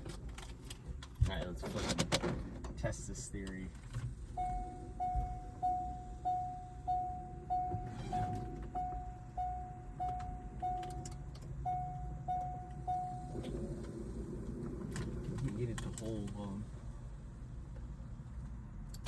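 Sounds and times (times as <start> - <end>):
car warning chime beeping: 4.3 - 13.6.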